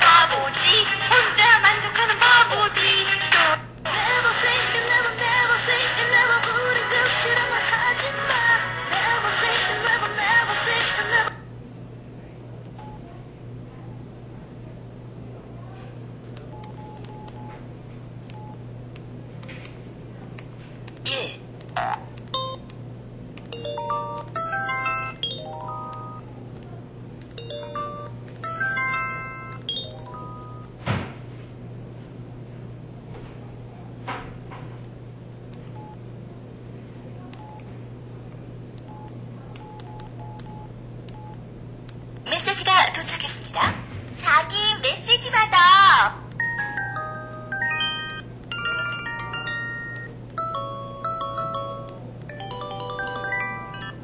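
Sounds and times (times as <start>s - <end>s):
steady low hum: 0.0s - 54.0s
phone keypad beeps: 16.5s - 17.6s, 37.4s - 37.6s, 38.9s - 41.4s
phone key-tone beeps: 27.4s - 30.7s.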